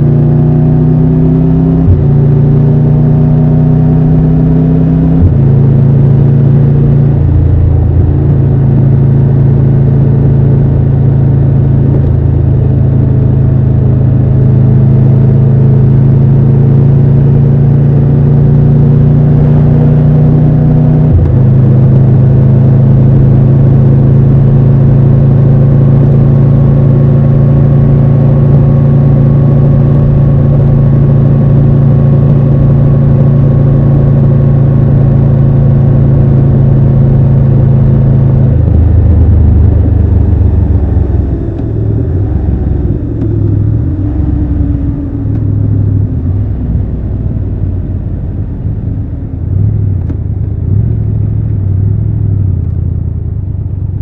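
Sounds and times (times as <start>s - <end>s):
gear change: 25.3s - 53.7s.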